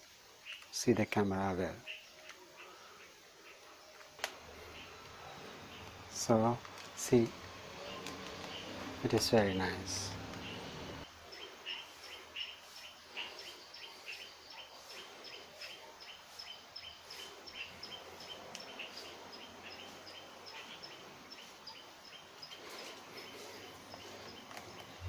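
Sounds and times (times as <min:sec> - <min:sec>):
small bird chirping: 0:00.3 - 0:25.0
background hum: 0:02.6 - 0:15.4.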